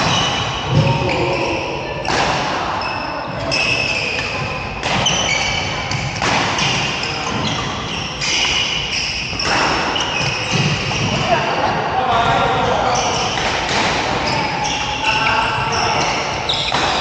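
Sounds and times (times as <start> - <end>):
shoes squeaking on court: 0.0 - 2.2, 2.8 - 11.4, 12.2 - 17.0
racket hitting shuttlecock: 2.0 - 2.9, 3.5 - 11.2, 13.0 - 15.2, 15.9 - 17.0.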